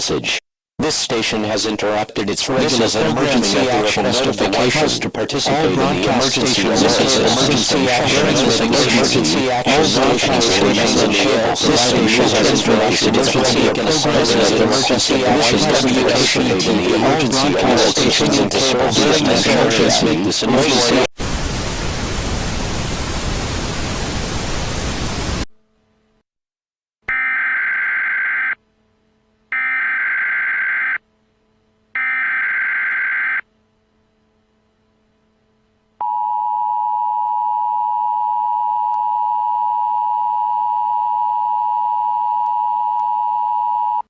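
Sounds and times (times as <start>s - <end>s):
white-noise static burst: 0.8s - 25.6s.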